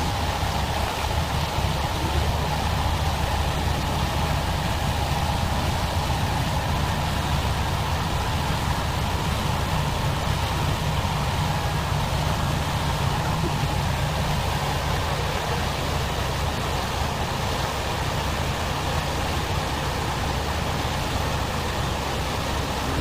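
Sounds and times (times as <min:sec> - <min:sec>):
even rushing noise: 0:22.1 - 0:23.0.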